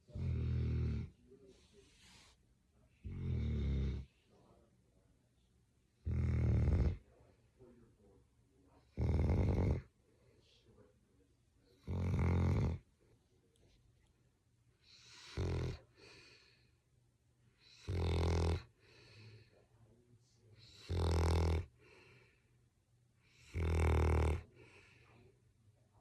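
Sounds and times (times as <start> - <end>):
dog snoring: 0.0 - 2.3, 3.0 - 4.1, 6.0 - 7.1, 8.8 - 9.9, 11.8 - 12.8, 14.8 - 16.6, 17.6 - 19.5, 20.6 - 22.3, 23.2 - 25.0.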